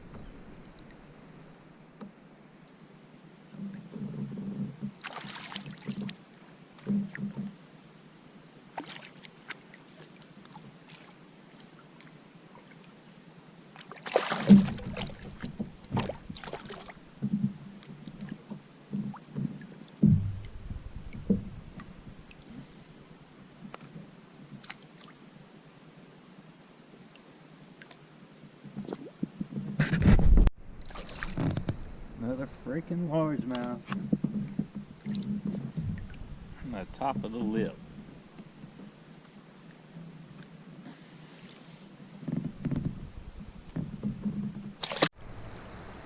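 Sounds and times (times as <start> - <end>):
paddle knocking kayak hull: 14.4 - 22.4.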